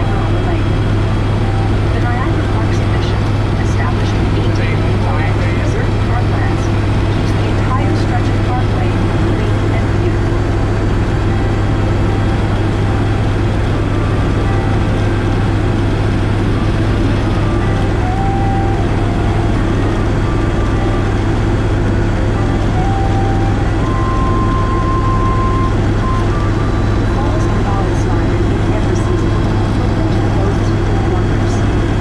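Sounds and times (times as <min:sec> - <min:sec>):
helicopter engine and rotor drone: 0:00.0 - 0:32.0.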